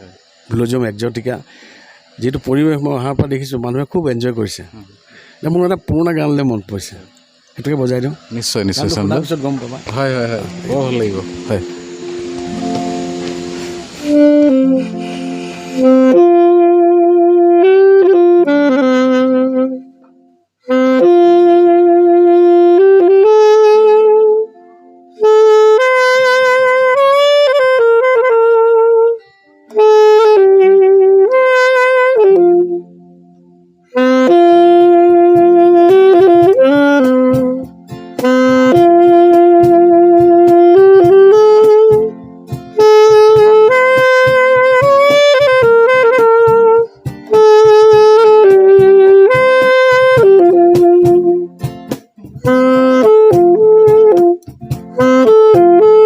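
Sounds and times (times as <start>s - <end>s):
saxophone melody: 0.0s - 56.0s
player breathing: 1.4s - 2.2s, 4.9s - 5.4s, 14.8s - 15.8s.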